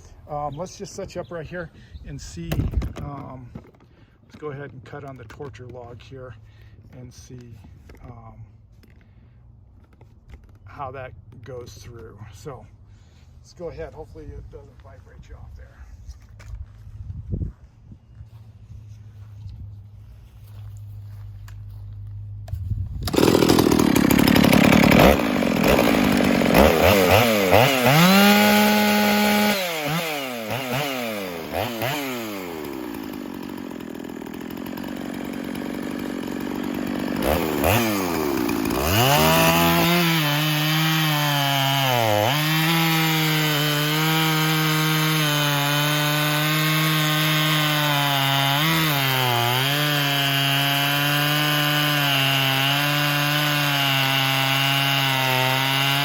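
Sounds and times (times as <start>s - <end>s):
chainsaw revving and cutting log: 23.0s - 56.0s.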